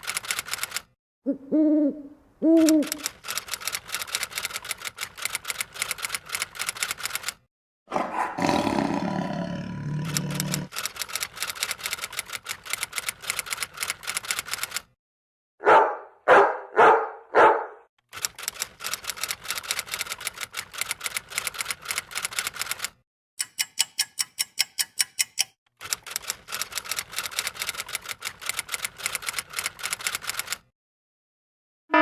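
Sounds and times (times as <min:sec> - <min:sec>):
typewriter keys clacking: 0:00.0 - 0:00.9, 0:02.6 - 0:07.4, 0:10.1 - 0:14.9, 0:18.1 - 0:30.6
dog barking: 0:07.9 - 0:08.4, 0:15.6 - 0:17.9.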